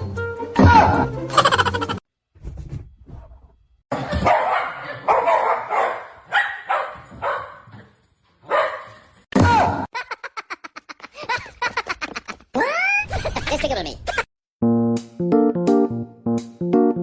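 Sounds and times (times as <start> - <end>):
dog barking: 4.0 - 9.1.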